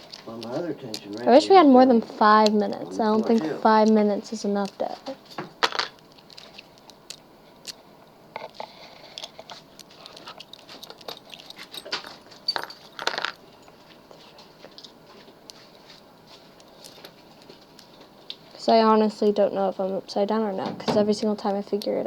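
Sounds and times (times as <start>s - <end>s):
handling rustles: 0.0s - 7.0s, 8.4s - 18.5s.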